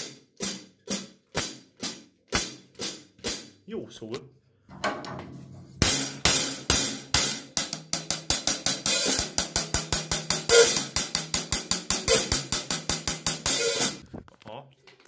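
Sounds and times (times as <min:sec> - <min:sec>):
hi-hat cymbal strikes: 0:05.8 - 0:14.0.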